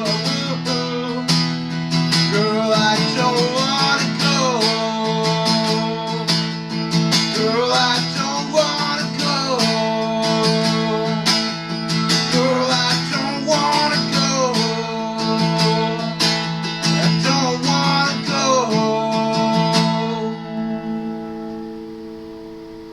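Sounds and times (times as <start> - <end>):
acoustic guitar strumming: 0.0 - 22.9.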